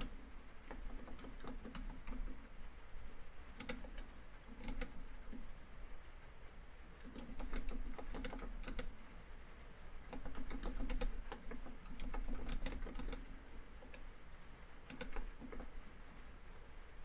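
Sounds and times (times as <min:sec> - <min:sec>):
typing on laptop keyboard: 0:00.0 - 0:02.4, 0:03.5 - 0:05.4, 0:07.0 - 0:09.0, 0:10.1 - 0:14.1, 0:14.9 - 0:15.8.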